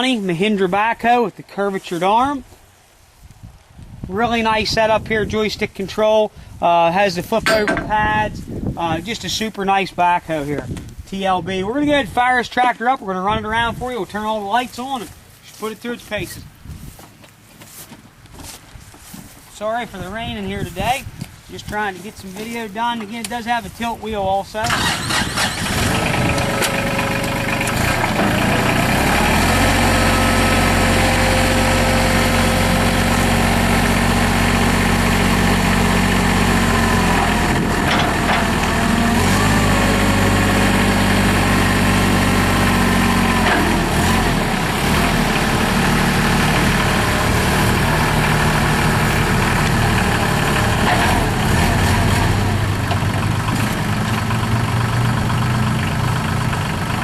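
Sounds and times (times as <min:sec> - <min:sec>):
diesel tractor engine revving: 0:24.6 - 0:57.0.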